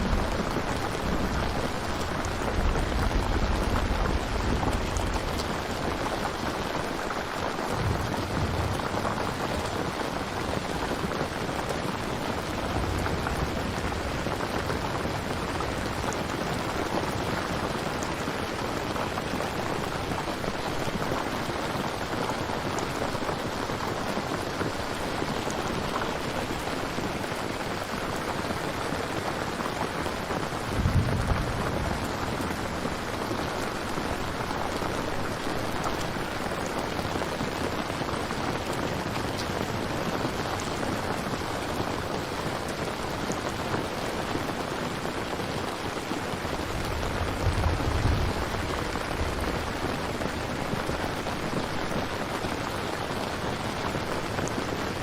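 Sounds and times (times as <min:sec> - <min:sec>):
low rumble: 0:00.0 - 0:05.6
heavy rain hissing: 0:00.0 - 0:55.0.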